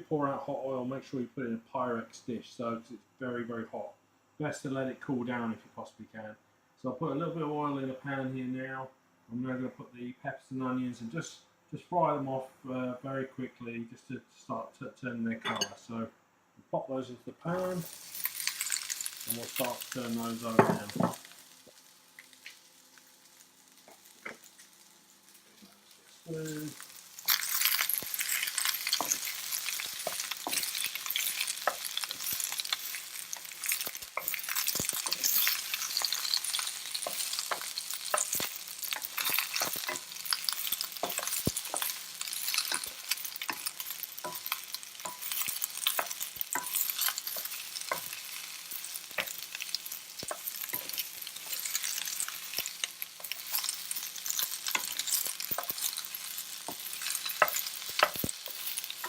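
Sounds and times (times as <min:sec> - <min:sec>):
spoon scraping and knocking wok: 0:15.5 - 0:15.8, 0:26.8 - 0:59.0
vegetables sizzling in hot oil: 0:17.4 - 0:59.0.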